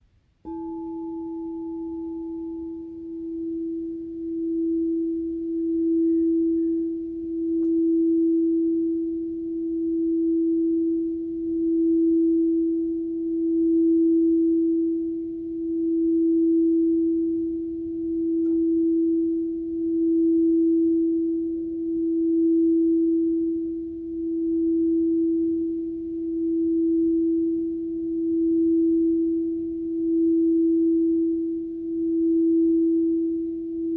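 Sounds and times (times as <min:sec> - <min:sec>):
sustained pure tone: 0:00.4 - 0:33.9
faint high ring: 0:00.5 - 0:08.5.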